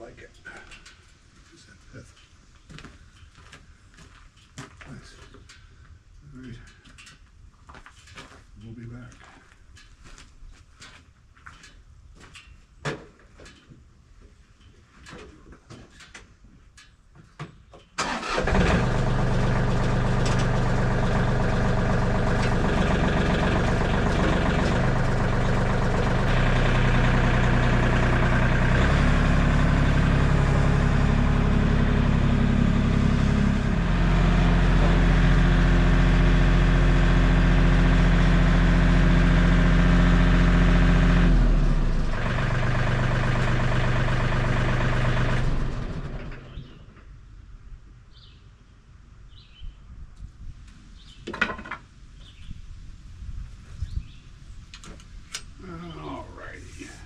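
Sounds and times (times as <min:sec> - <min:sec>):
small gas engine running: 0:18.0 - 0:46.6.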